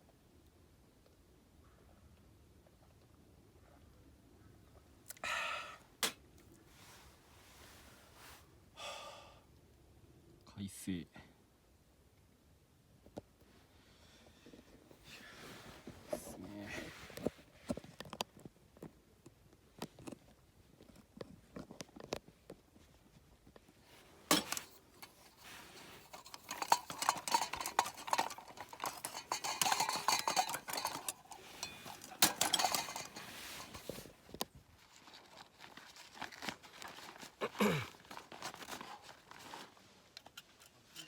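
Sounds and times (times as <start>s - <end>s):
rustling: 20.9s - 41.0s
metal clattering: 24.3s - 34.1s
small clicks and clinks: 24.3s - 34.5s, 38.2s - 41.0s.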